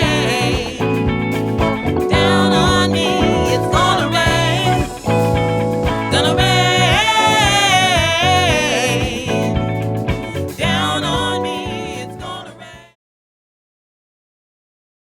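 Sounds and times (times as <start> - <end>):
band playing a song: 0.0 - 13.0
person singing wavering notes: 2.1 - 5.2, 6.0 - 9.5.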